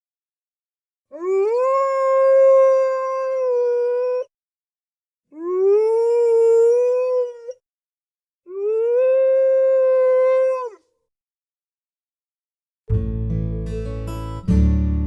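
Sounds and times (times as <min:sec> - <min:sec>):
wolf howling: 0:01.2 - 0:04.3, 0:05.4 - 0:07.6, 0:08.6 - 0:10.8.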